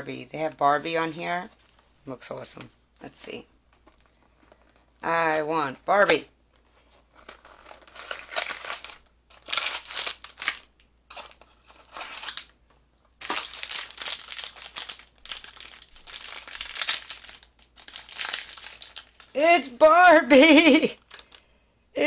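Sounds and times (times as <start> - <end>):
packaging crinkling and tearing: 3.7 - 5.0, 6.5 - 12.6, 13.2 - 19.4, 20.6 - 21.5.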